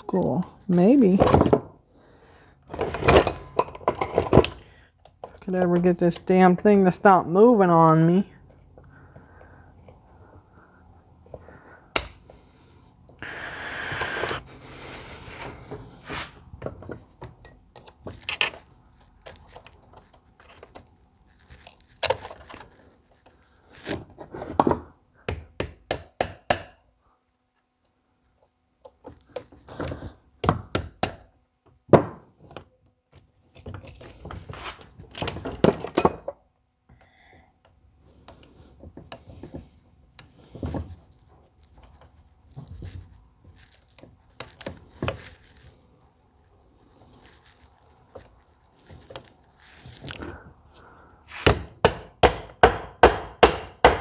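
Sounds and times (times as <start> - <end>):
metal parts clinking on workbench: 35.5 - 36.4.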